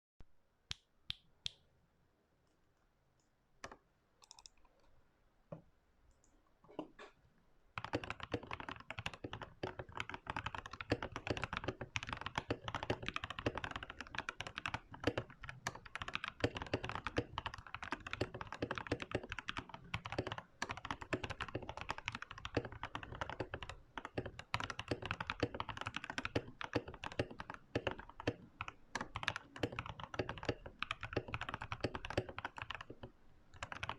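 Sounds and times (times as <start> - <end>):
mechanical keyboard typing: 4.2 - 4.6, 7.8 - 33.9.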